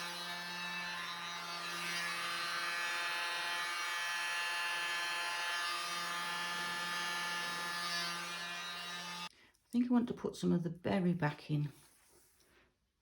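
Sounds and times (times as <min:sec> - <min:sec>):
electric air blower running: 0:00.0 - 0:03.9, 0:04.5 - 0:09.3.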